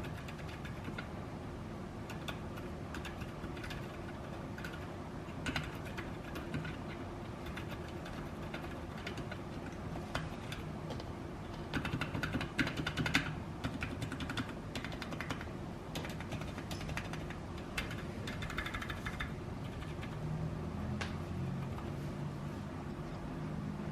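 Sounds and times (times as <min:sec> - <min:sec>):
muffled keyboard keystrokes: 0:02.0 - 0:20.2.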